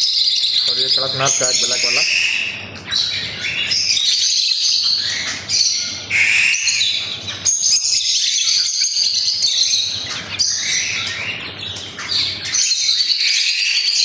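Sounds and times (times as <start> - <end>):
chicks peeping: 0.0 - 14.0.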